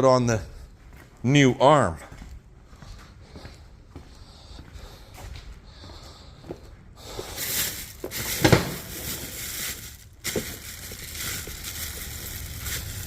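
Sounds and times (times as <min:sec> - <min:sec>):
scraping and rustling of parts: 0:07.2 - 0:13.0.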